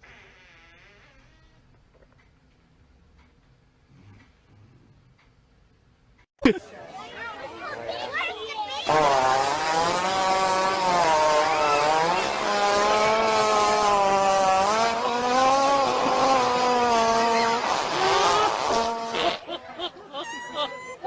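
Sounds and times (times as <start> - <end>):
long buzzing fart: 0.0 - 1.6, 8.9 - 19.5.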